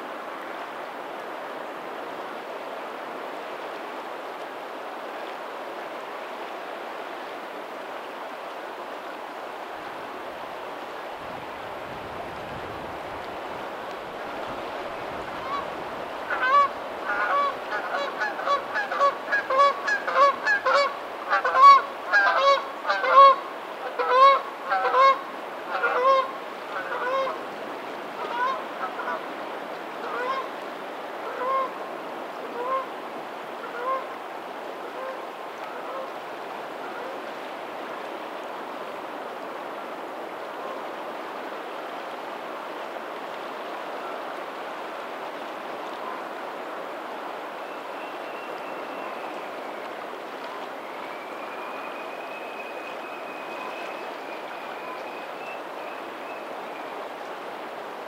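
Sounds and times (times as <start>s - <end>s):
distant waves: 0.0s - 58.0s
geese honking: 16.3s - 27.4s.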